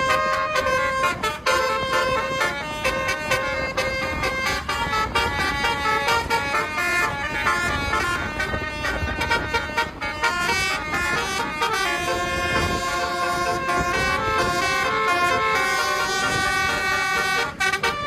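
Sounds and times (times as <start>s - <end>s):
musical bus horn tune: 0.0s - 18.0s.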